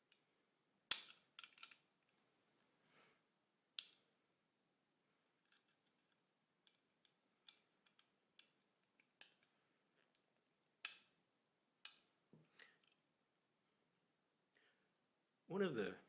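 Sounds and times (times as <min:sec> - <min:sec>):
small steel parts clicking: 0:00.9 - 0:01.9, 0:05.4 - 0:10.2.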